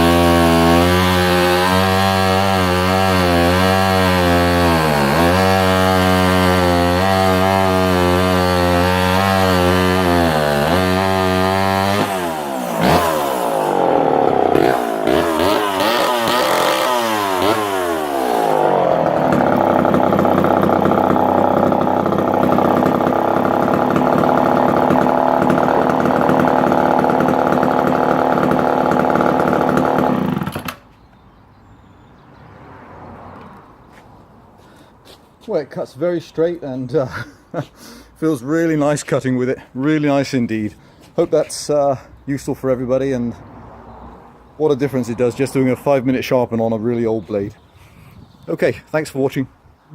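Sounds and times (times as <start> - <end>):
chainsaw cutting wood: 0.0 - 30.9.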